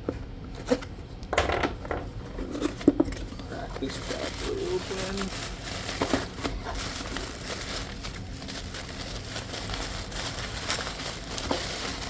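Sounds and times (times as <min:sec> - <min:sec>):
packaging crinkling: 0:02.7 - 0:12.0.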